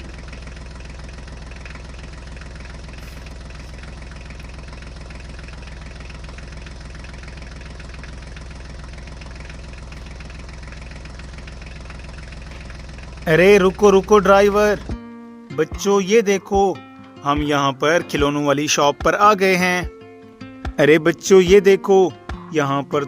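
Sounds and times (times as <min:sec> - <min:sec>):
fast regular engine knock: 0:00.0 - 0:15.0, 0:18.2 - 0:18.4, 0:21.5 - 0:22.5
tractor diesel engine idling: 0:00.0 - 0:23.0.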